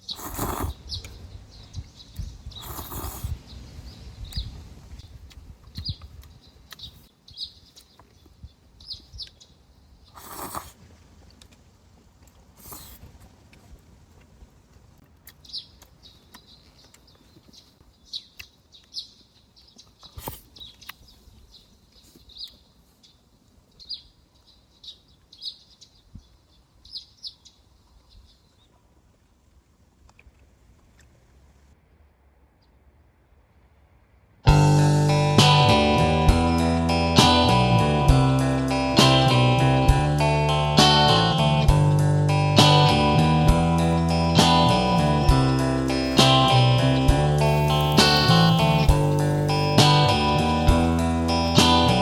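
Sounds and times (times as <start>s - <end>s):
small birds chirping: 0.0s - 10.8s, 15.2s - 28.8s, 34.8s - 52.0s.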